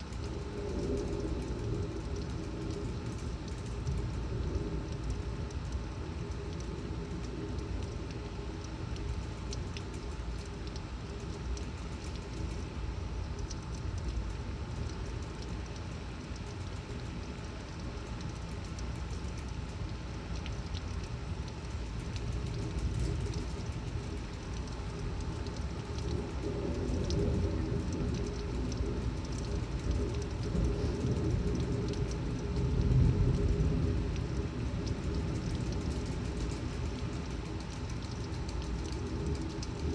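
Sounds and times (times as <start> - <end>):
torrential rain: 0.0 - 39.9
thunder rumble: 22.2 - 37.6.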